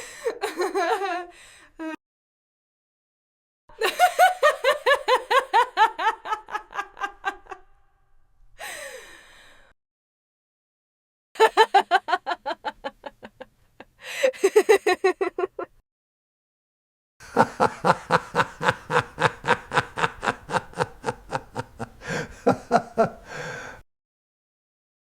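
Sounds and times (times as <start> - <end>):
person laughing: 0.2 - 2.0, 14.1 - 15.8, 17.2 - 23.7
breathy exhale: 22.0 - 22.5, 23.2 - 23.8.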